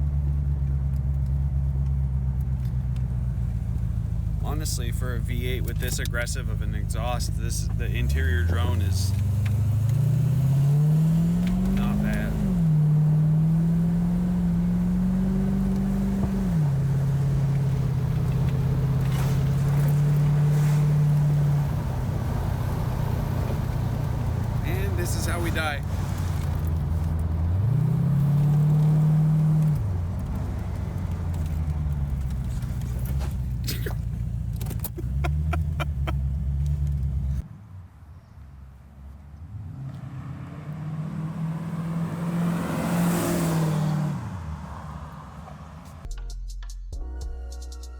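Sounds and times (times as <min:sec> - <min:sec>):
loud engine exhaust: 0:06.7 - 0:37.4.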